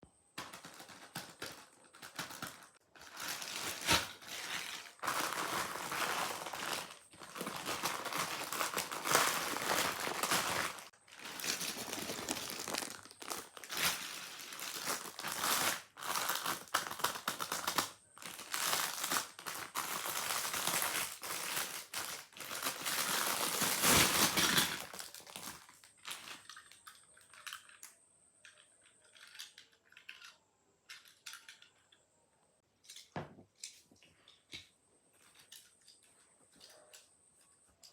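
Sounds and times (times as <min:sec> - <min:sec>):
packaging crinkling and rustling: 0:00.4 - 0:27.9.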